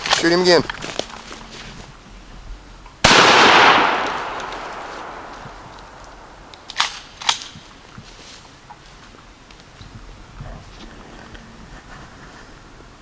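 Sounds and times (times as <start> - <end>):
shotgun blast: 3.0 - 7.1.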